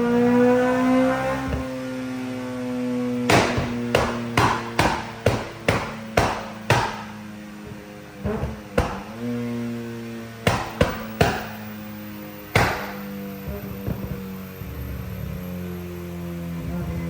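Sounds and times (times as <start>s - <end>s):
sharp percussive hits: 3.3s - 7.1s, 10.4s - 11.6s, 12.5s - 13.0s.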